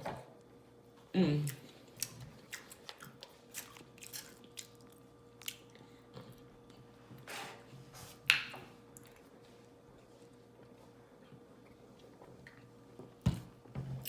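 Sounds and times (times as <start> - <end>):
chewing with wet smacking: 1.5 - 6.8, 8.9 - 9.3.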